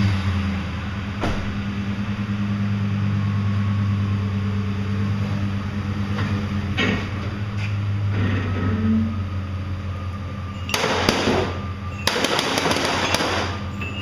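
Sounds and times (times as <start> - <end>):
vehicle engine humming: 0.0 - 14.0
sharp metallic clanks: 10.6 - 14.0.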